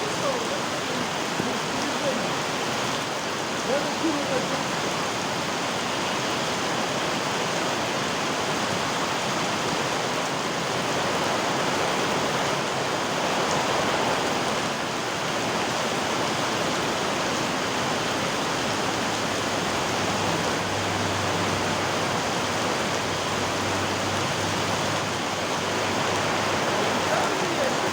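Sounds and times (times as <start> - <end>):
heavy rain hissing: 0.0 - 27.9
running water: 0.0 - 27.9.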